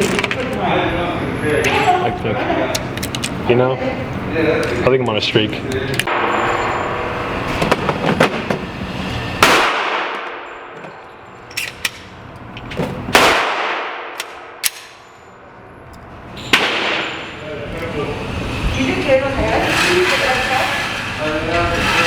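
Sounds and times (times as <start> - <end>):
pistol shots echoing indoors: 6.1 - 7.4, 9.4 - 10.7, 13.1 - 15.0, 16.4 - 17.4.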